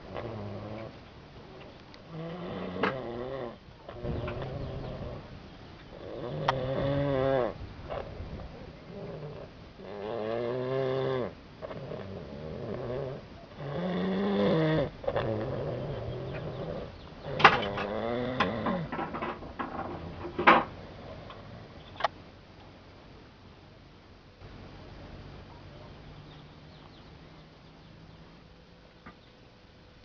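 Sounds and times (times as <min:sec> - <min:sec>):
man snoring loudly: 0:02.1 - 0:05.2, 0:06.0 - 0:07.6, 0:08.9 - 0:18.9.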